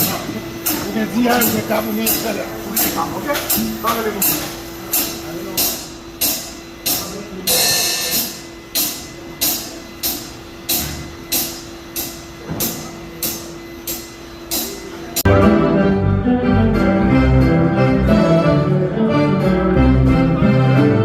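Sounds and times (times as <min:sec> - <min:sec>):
sharp cymbal-like strikes: 0:00.0 - 0:15.8
slow percussion beat: 0:00.0 - 0:15.8.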